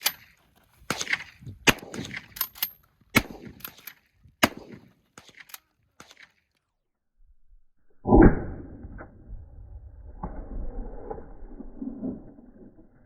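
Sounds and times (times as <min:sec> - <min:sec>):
shotgun blasts echoing: 0:00.9 - 0:02.4, 0:03.1 - 0:03.8, 0:04.4 - 0:06.2.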